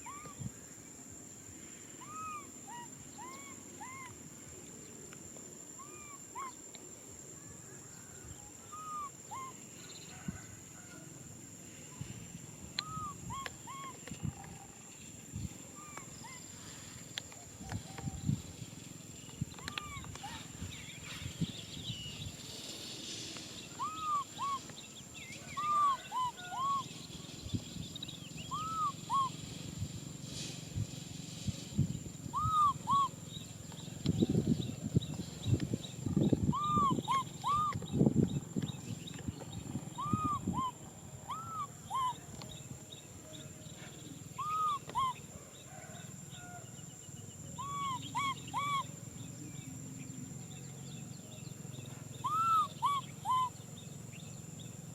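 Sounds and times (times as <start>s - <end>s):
baby monkey squeaky calls: 2.0s - 4.1s, 12.8s - 14.0s, 23.8s - 24.6s, 25.6s - 26.8s, 28.5s - 29.4s, 32.3s - 33.1s, 36.4s - 37.8s, 40.0s - 42.2s, 44.4s - 45.2s, 47.6s - 48.9s, 52.2s - 53.6s.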